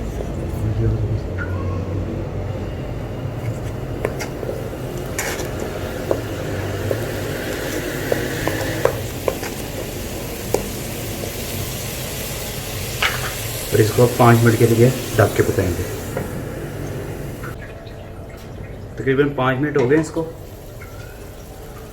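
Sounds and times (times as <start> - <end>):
low hum: 0.0 - 9.2
food sizzling: 2.8 - 17.6, 20.1 - 21.9.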